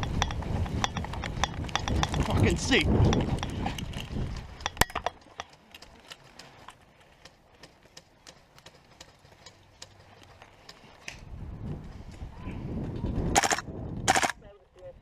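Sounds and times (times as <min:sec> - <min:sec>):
sharp clicks and knocks: 0:00.0 - 0:06.5.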